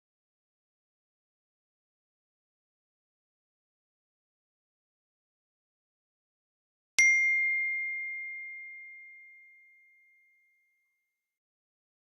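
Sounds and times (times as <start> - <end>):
bell-like ding: 7.0 - 11.1.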